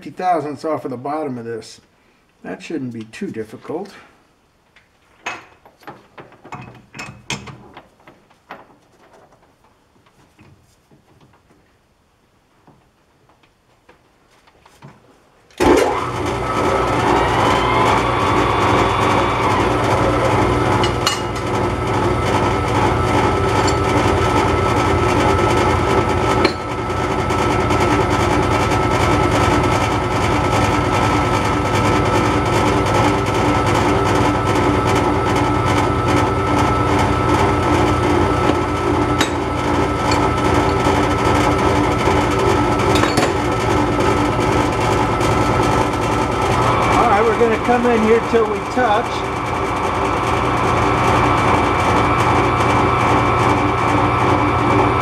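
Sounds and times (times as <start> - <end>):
metal lathe motor humming and whining: 15.6 - 55.0.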